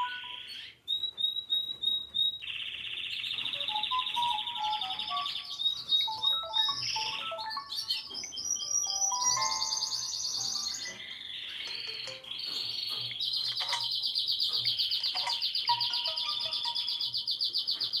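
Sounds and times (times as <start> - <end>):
birdsong ringtone trills: 0.0 - 18.0
soft musical tones: 3.6 - 13.1, 15.2 - 17.3.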